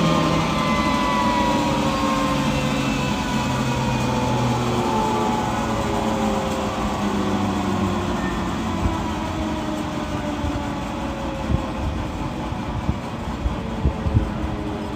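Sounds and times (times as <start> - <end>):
jet engine roaring and whining: 0.0 - 14.9.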